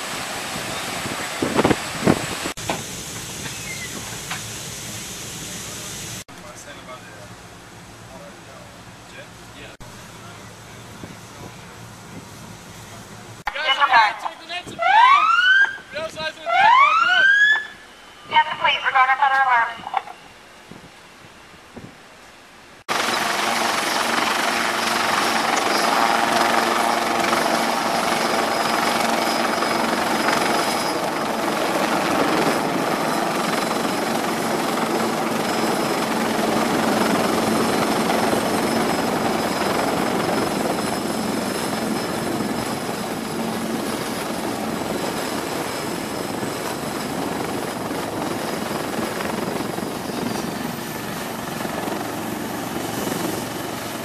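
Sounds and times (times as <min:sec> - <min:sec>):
high turbine whine: 0:22.6 - 0:54.0
helicopter engine and rotor: 0:22.9 - 0:54.0.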